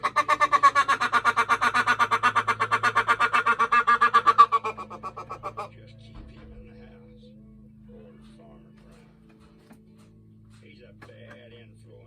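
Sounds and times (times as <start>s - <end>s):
rapid repeated pitched notes: 0.0s - 5.8s.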